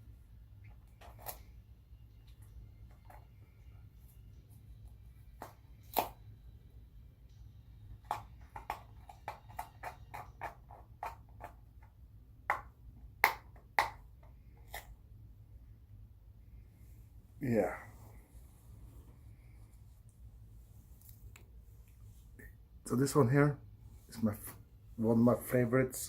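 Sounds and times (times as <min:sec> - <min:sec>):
low steady hum: 0:00.0 - 0:26.0
small objects clicking and tapping: 0:08.0 - 0:11.7.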